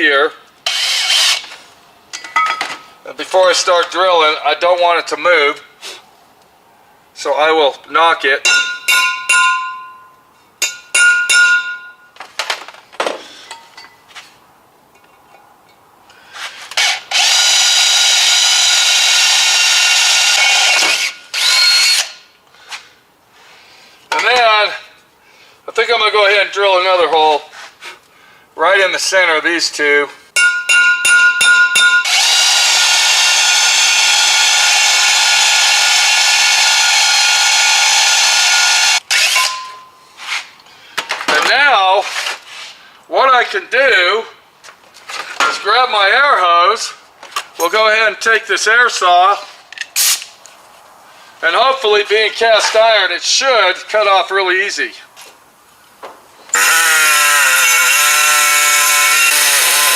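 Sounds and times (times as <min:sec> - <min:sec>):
power drill boring into metal: 0:00.6 - 0:01.5, 0:16.7 - 0:22.2, 0:32.0 - 0:39.7, 0:56.5 - 0:59.9
hammer striking metal punch: 0:08.4 - 0:12.0, 0:30.4 - 0:32.1, 0:39.3 - 0:40.0.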